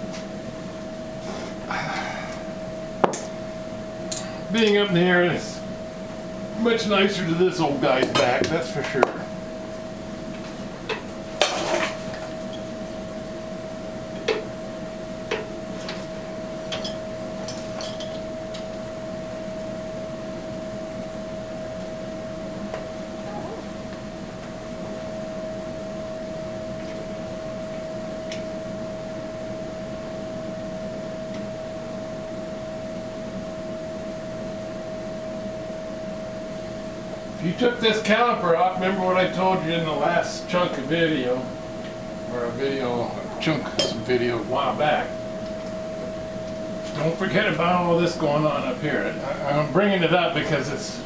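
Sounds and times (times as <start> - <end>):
steady hum: 0.0 - 51.0
metal tools clinking: 43.7 - 44.2.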